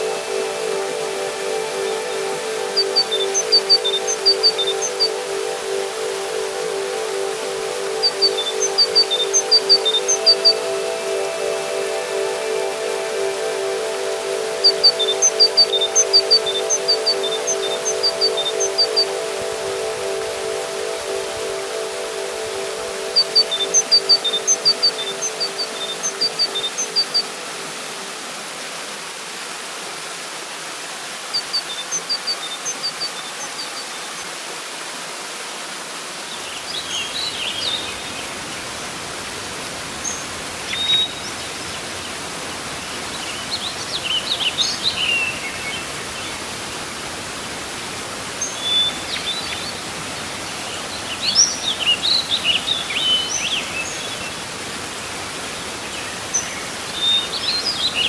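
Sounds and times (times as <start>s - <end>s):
birds chirping: 0.0s - 28.1s
waterfall rushing: 0.0s - 58.0s.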